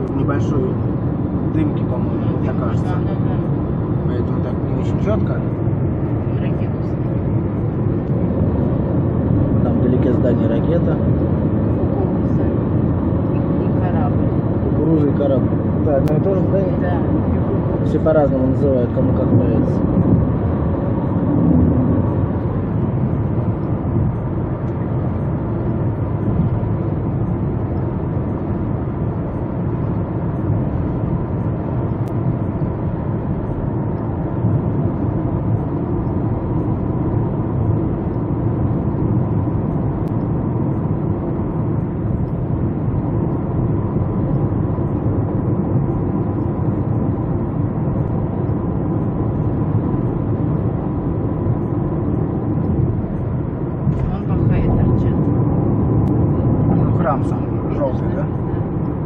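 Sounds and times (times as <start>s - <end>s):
car road and engine rumble: 0.0s - 59.0s.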